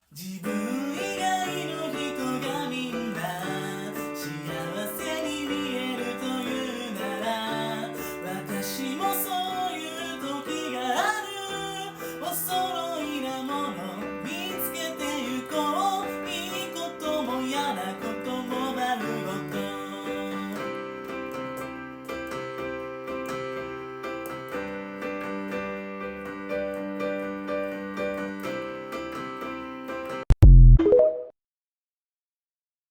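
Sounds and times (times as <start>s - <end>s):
person singing pop song: 0.0s - 21.4s.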